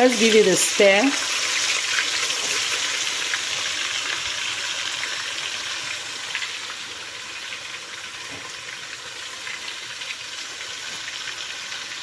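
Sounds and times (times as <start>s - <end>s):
onions sizzling in hot oil: 0.0s - 12.0s.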